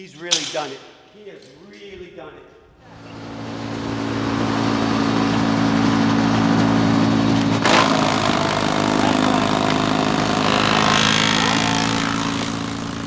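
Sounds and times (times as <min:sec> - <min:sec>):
woodchipper engine running: 0:02.9 - 0:13.0
shirt being shredded: 0:05.1 - 0:13.0.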